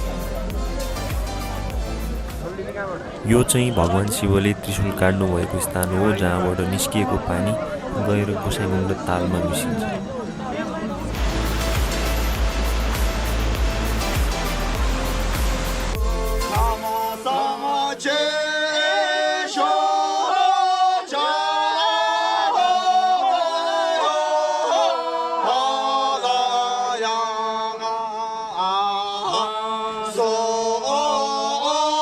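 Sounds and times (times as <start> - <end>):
person singing: 14.0 - 32.0.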